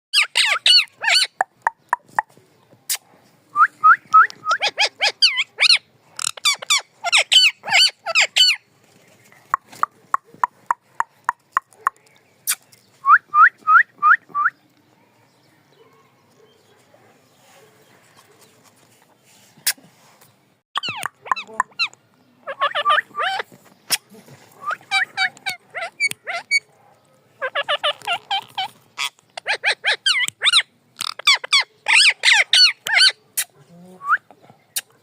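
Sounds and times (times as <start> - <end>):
parrot squawking and chirping: 0.2 - 1.9, 4.4 - 8.6, 20.8 - 24.0, 24.6 - 26.7, 27.4 - 33.5.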